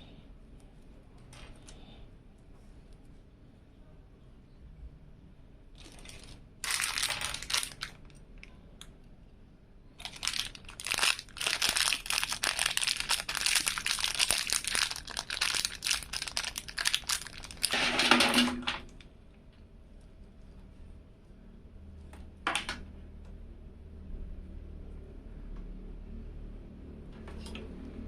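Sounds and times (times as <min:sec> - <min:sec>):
packaging crinkling: 0:05.8 - 0:08.2, 0:10.0 - 0:19.0.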